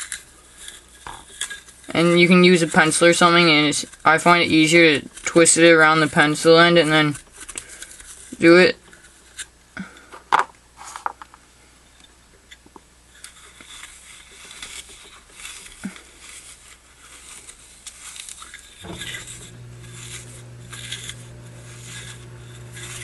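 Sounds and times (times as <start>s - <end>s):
steady low hum: 18.8s - 23.0s
steel wool scrubbing metal: 18.8s - 23.0s.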